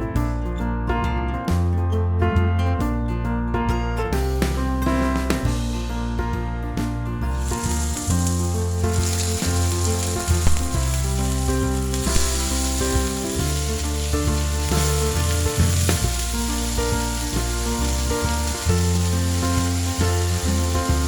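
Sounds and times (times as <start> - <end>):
background music with bass and chords: 0.0 - 21.0
meatballs sizzling in oil: 7.4 - 21.0.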